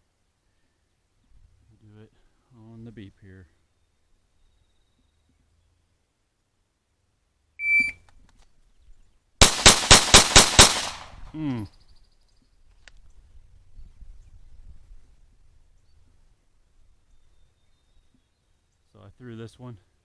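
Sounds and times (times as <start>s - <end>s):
shot timer beep: 7.6s - 8.0s
rapid pistol shots: 9.4s - 11.3s.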